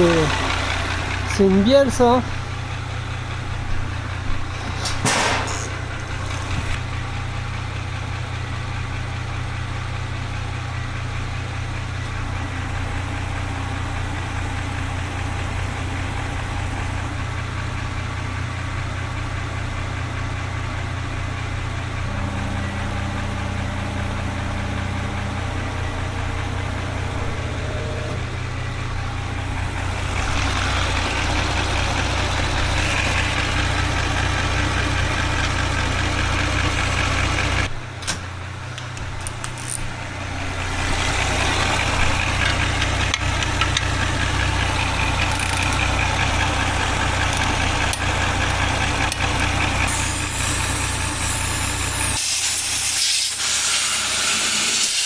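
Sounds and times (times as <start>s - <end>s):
engine idling with knocking: 0.0s - 53.8s
sharp clack: 4.4s - 6.8s.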